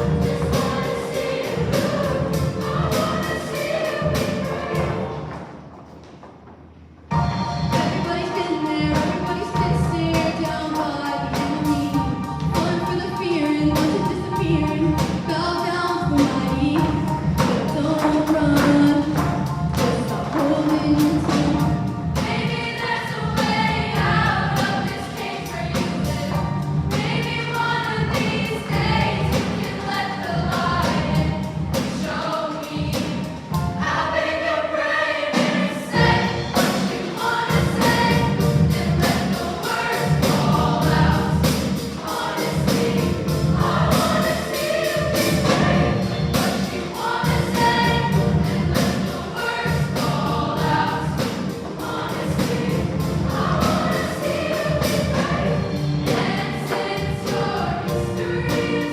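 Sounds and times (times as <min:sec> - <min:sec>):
choir singing: 0:00.0 - 0:05.5, 0:07.7 - 0:58.9
musical accompaniment: 0:00.0 - 0:58.9.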